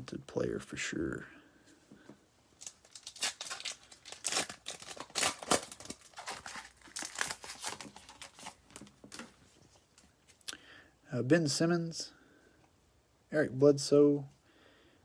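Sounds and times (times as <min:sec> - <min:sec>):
wrapper torn and crinkled: 0:02.6 - 0:09.2.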